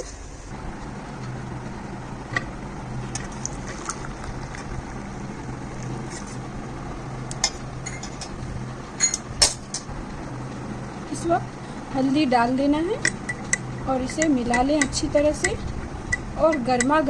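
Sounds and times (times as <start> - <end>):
liquid pouring: 3.2 - 4.7.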